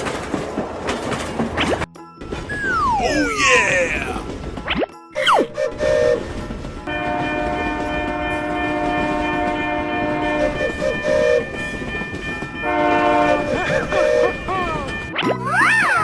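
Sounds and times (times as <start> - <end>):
train running noise: 0.0 - 16.0
train horn chord: 5.6 - 14.4.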